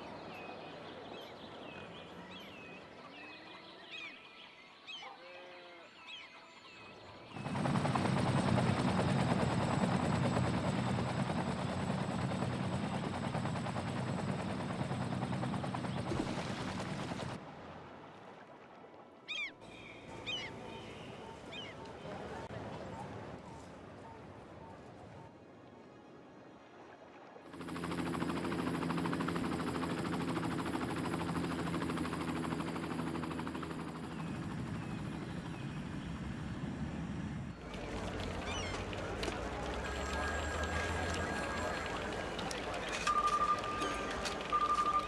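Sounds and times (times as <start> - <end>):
birds chirping: 19.3 - 22.4, 37.5 - 45.0
low honking calls: 37.6 - 45.0.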